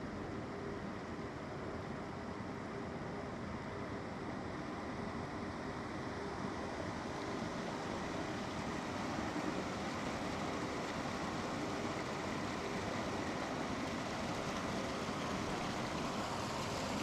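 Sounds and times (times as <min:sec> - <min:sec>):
river water rushing: 0:07.8 - 0:17.0.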